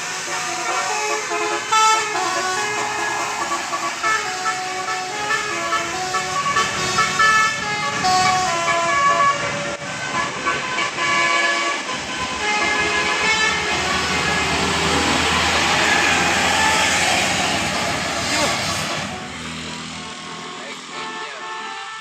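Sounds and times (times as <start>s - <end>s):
tuned bus horns playing melody: 0.0s - 17.5s, 20.2s - 22.0s.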